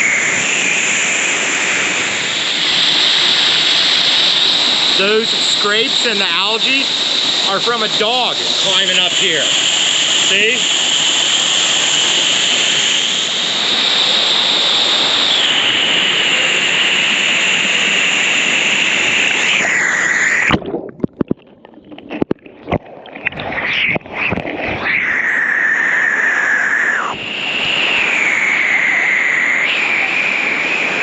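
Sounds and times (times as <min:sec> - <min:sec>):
water splashes and gurgles: 0:19.6 - 0:25.5.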